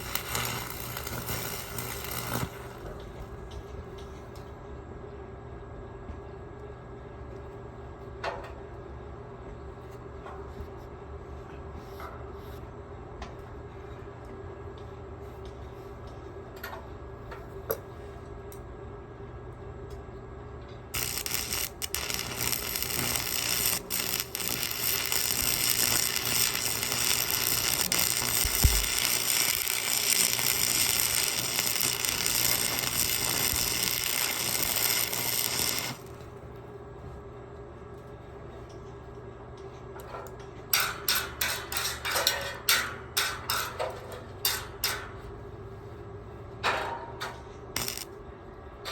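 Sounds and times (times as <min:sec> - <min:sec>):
arc welding crackle: 0:00.0 - 0:03.6, 0:20.9 - 0:36.3, 0:47.8 - 0:48.2.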